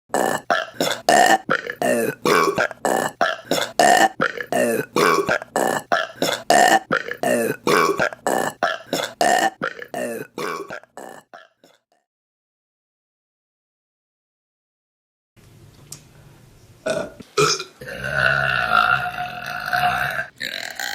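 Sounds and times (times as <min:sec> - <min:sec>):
woman burping rapidly: 0:00.1 - 0:11.8, 0:16.9 - 0:20.9.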